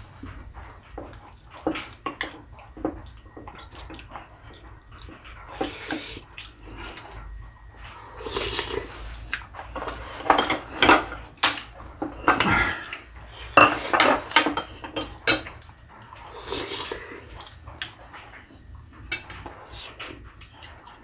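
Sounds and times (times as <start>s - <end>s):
dishes and utensils clattering: 9.7s - 15.7s.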